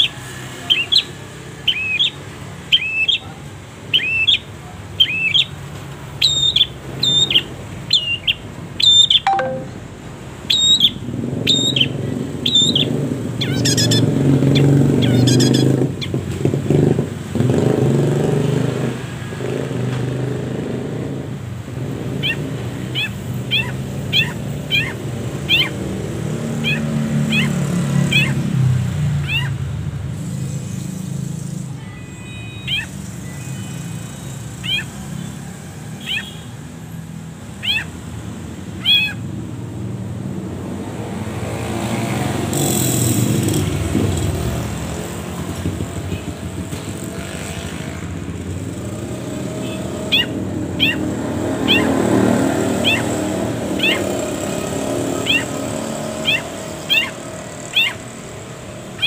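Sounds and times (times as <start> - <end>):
bird giving short rising calls: 22.2 - 25.8, 26.6 - 28.4, 31.4 - 33.6, 34.6 - 35.0, 37.6 - 38.0, 38.8 - 39.3, 49.6 - 59.0.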